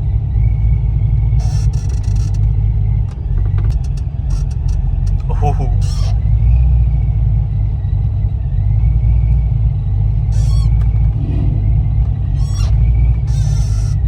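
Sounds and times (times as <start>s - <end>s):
car engine and road rumble: 0.0s - 14.0s.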